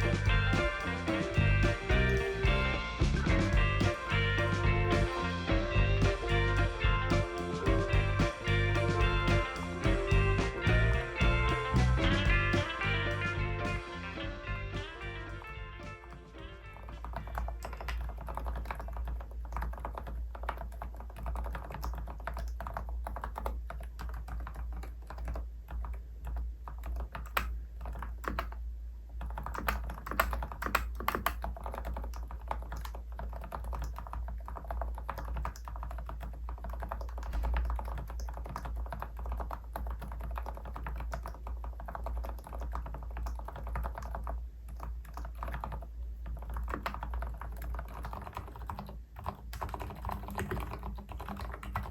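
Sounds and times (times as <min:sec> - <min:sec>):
mechanical keyboard typing: 0:16.8 - 0:28.6, 0:29.2 - 0:51.9.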